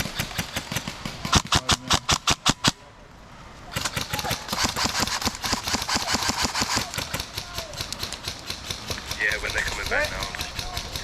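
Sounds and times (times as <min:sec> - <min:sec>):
airsoft gun shots: 0:03.7 - 0:11.0.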